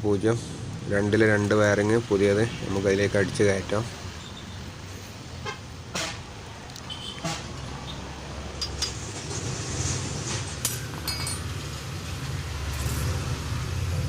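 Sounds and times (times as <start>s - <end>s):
metallic clinks and taps: 10.6s - 11.6s.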